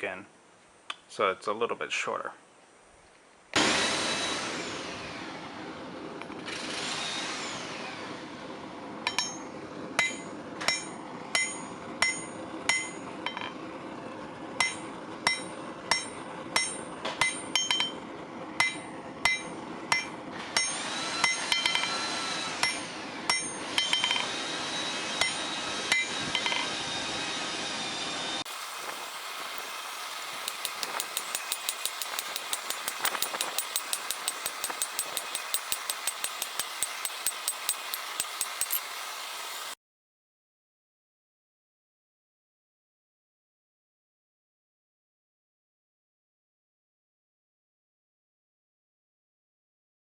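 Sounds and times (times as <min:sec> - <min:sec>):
hammer striking steel on anvil: 0:09.1 - 0:09.4, 0:10.0 - 0:13.4, 0:14.6 - 0:18.0, 0:18.6 - 0:21.8, 0:28.5 - 0:39.8.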